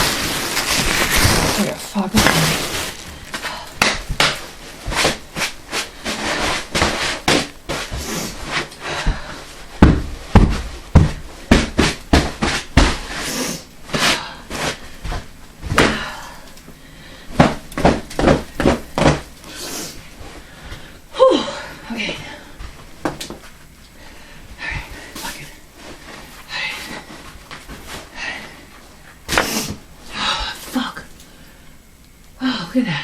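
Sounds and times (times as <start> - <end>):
irregular knocks and thumps: 9.0 - 13.1.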